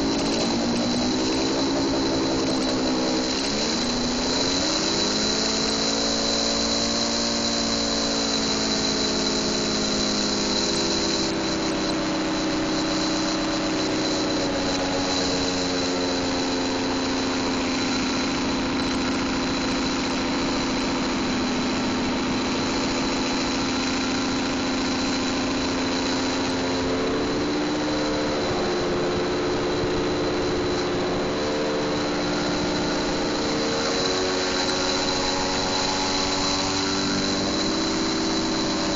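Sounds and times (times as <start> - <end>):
siren wailing chord: 0.0 - 7.0, 24.9 - 38.9
siren engine running: 0.0 - 18.8, 19.8 - 38.9.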